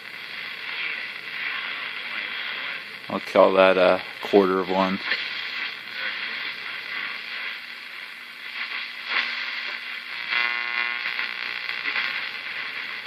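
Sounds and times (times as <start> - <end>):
radio static hiss: 0.0 - 13.0.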